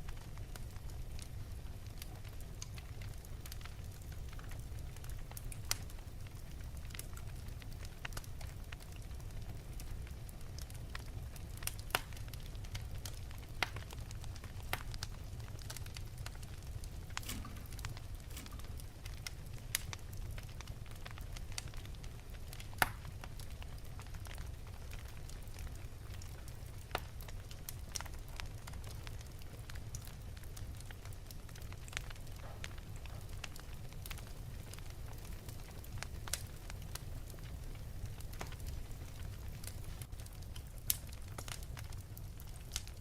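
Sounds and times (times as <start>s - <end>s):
fire crackling and popping: 0.0s - 43.0s
fire rumbling: 0.0s - 43.0s.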